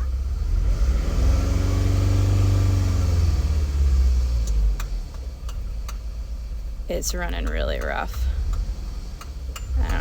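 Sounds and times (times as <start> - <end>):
engine running rough and revving: 0.0 - 10.0.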